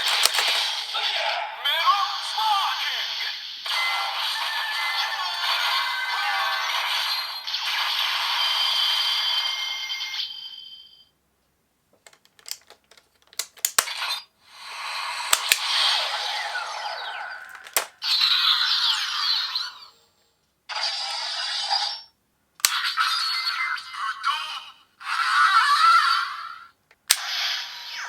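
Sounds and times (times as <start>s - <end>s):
sharp clicks: 0.0s - 0.7s, 12.0s - 14.0s, 15.3s - 15.8s, 17.5s - 18.0s
toy electronic sound effects and music: 1.9s - 9.2s, 14.5s - 20.0s.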